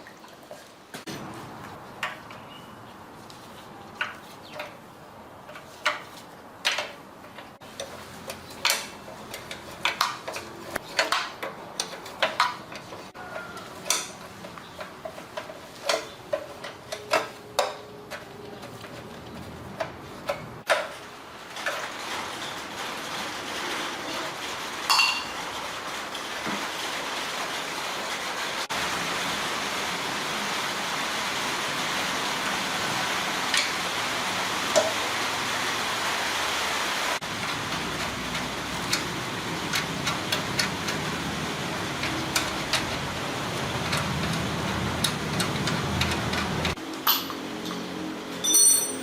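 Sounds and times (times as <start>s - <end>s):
metallic clinks and taps: 47.0s - 47.4s, 48.4s - 49.0s.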